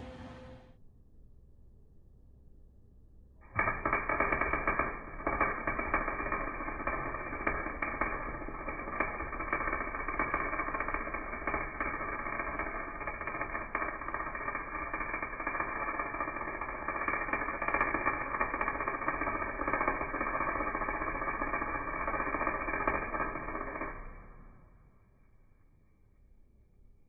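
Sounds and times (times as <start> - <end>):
arc welder crackling sizzle: 3.4 - 24.9.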